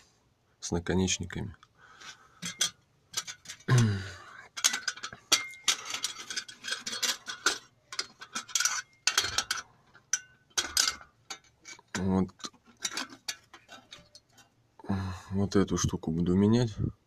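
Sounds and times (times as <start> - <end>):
metallic clicks and knocks: 2.4 - 3.9, 4.5 - 14.5.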